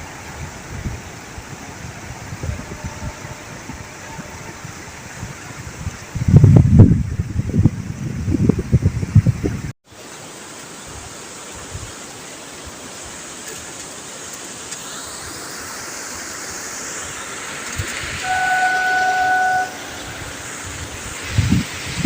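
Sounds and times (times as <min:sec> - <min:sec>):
train approaching: 0:00.0 - 0:05.6, 0:14.9 - 0:22.0
train horn: 0:02.2 - 0:05.1, 0:18.2 - 0:20.6.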